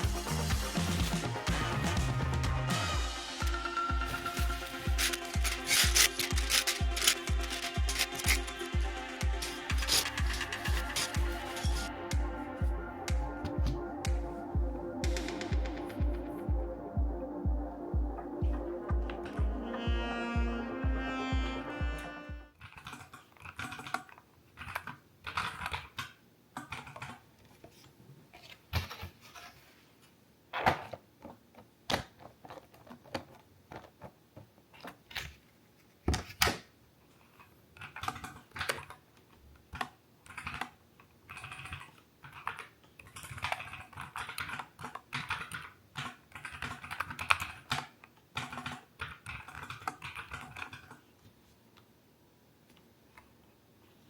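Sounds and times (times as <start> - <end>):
mechanical keyboard typing: 4.0 - 11.9, 22.6 - 27.2, 37.8 - 39.0, 39.7 - 51.0.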